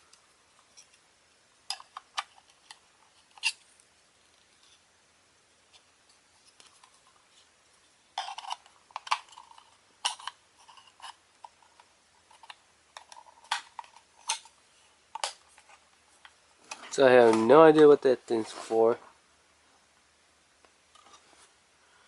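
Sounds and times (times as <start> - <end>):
plastic parts clicking and rattling: 8.2 - 15.8.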